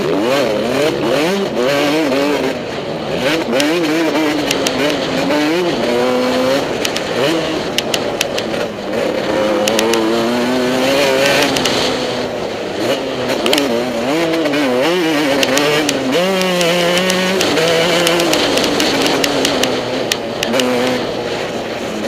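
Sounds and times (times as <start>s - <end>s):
motocross bike engine revving: 0.0s - 22.0s
sharp ticks and clatter: 3.2s - 12.2s, 12.9s - 21.2s.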